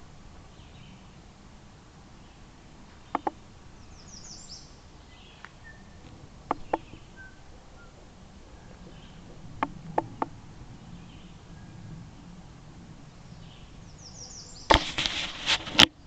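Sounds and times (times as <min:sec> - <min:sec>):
steady low rumble: 0:00.0 - 0:14.7
high bird chirps: 0:03.0 - 0:08.0
sharp knocks: 0:03.1 - 0:03.4, 0:06.5 - 0:07.0.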